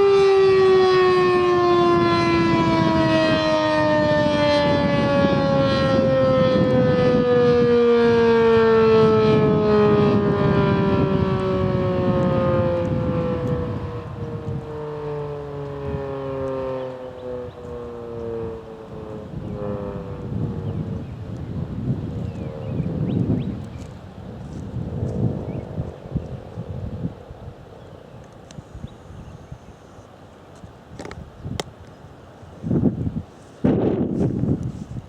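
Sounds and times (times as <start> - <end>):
warning siren winding down: 0.0 - 27.6.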